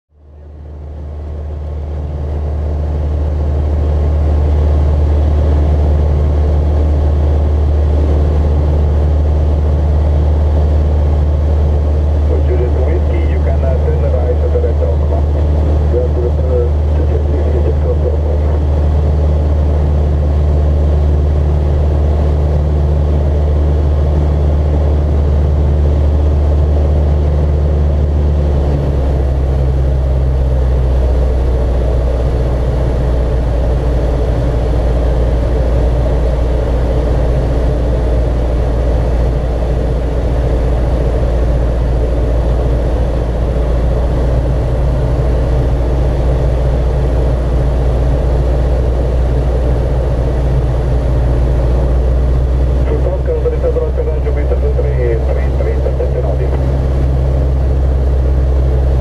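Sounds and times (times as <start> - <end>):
aircraft engine and propeller droning: 0.2 - 59.0.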